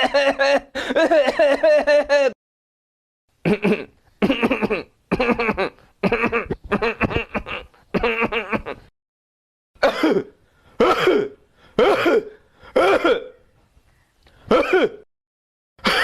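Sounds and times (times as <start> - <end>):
person coughing: 0.0 - 2.1, 3.4 - 8.9, 9.8 - 13.4, 14.5 - 15.1, 15.8 - 16.0.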